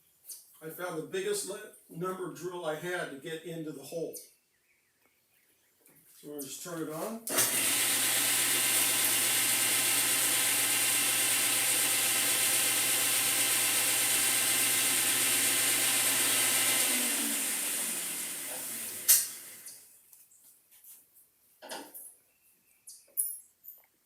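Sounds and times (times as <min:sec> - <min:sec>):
milling machine humming: 0:07.3 - 0:19.8.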